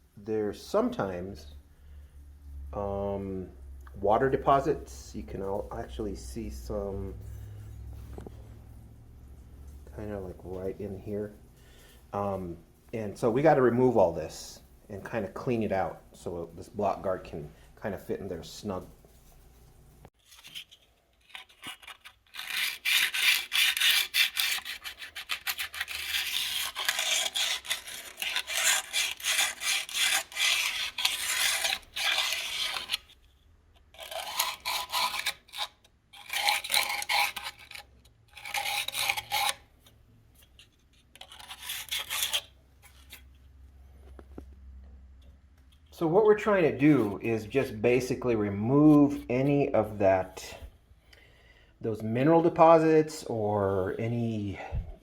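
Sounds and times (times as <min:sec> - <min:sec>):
hand scrubbing engine block: 0:21.4 - 0:33.0.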